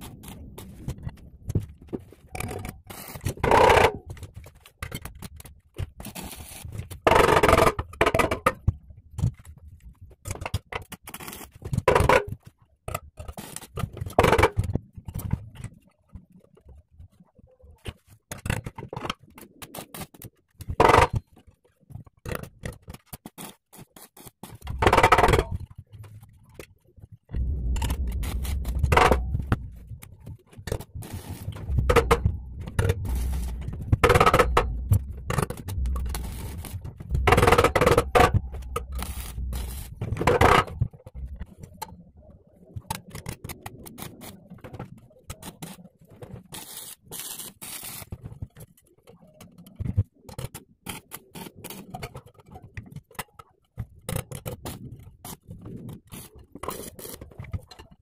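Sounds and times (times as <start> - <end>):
metal clanking and scraping: 27.3 - 41.5
low hum: 27.3 - 41.9.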